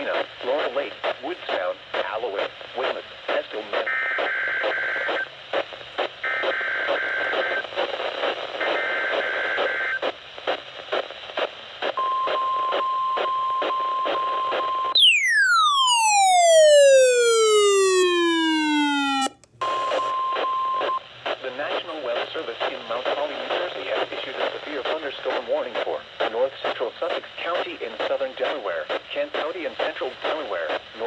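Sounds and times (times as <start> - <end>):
radio static crackle: 0.0 - 12.0, 21.1 - 31.0
loud falling glide tone: 15.0 - 19.3
steady alert tone: 15.0 - 19.4.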